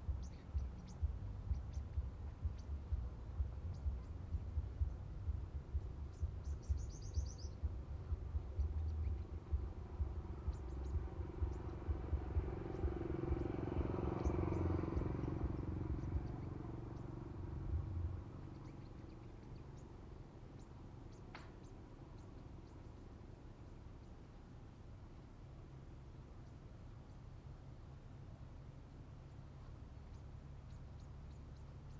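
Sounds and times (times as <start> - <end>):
bird chirping: 0.0 - 24.2
steady low rumble: 0.0 - 24.4.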